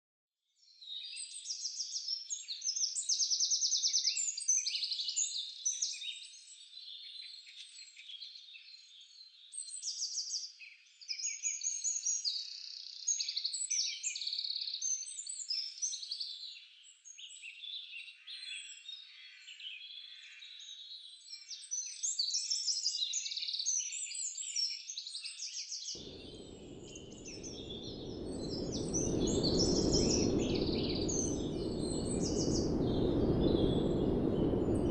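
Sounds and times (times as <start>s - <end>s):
birds singing: 26.0s - 34.9s
low rushing noise: 26.0s - 34.9s.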